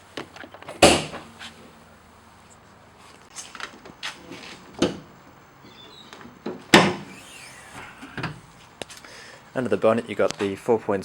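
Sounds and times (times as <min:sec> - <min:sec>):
loud car door clunk: 0:00.7 - 0:01.3, 0:06.5 - 0:07.1.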